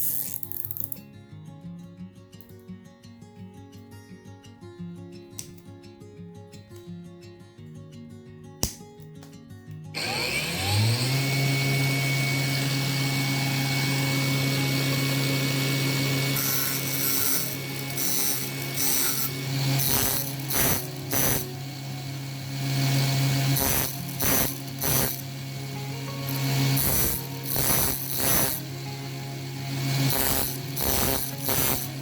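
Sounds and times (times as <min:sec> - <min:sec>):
circular saw cutting wood: 0:10.0 - 0:32.0
circular saw running: 0:10.0 - 0:32.0.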